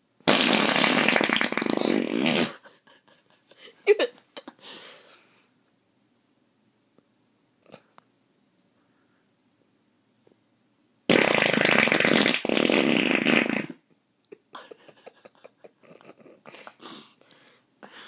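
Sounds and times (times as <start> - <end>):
loud fart noise: 0.2 - 2.6, 11.1 - 13.8.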